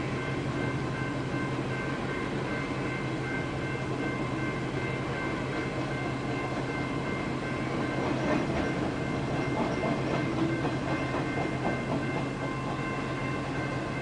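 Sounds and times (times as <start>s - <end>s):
train rumble: 0.0s - 14.0s
train wheels clacking on rails: 0.0s - 14.0s.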